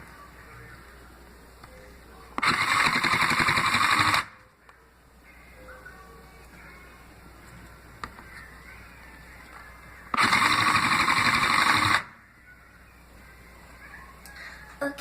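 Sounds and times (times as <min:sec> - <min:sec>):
toy sewing machine stitching: 0:02.4 - 0:04.3, 0:10.2 - 0:12.1.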